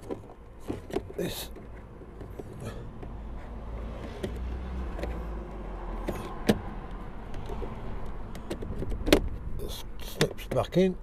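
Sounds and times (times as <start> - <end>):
plastic switch clicks and knocks: 10.1 - 10.7.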